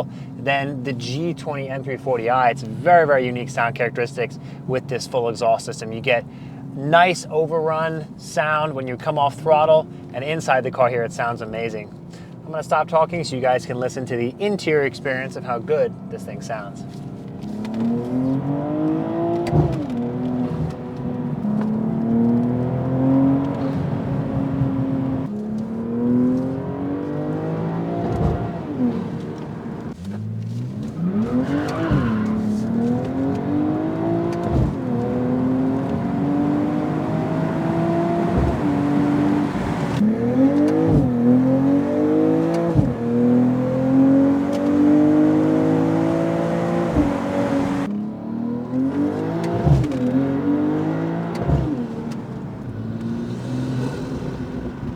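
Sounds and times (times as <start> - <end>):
car engine revving hard: 17.3 - 54.9.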